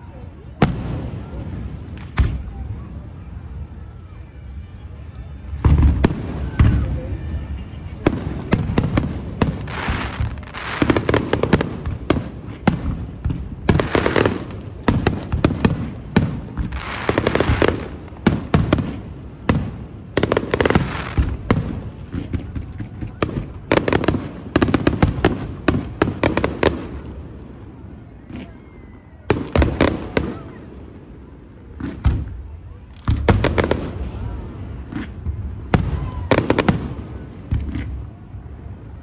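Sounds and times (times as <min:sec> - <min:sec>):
fireworks bursting: 0:05.5 - 0:39.0.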